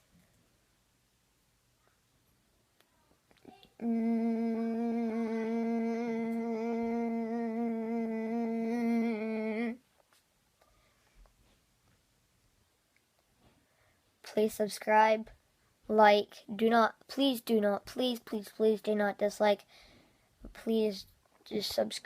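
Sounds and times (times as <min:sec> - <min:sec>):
person humming a steady note: 0:03.8 - 0:09.8.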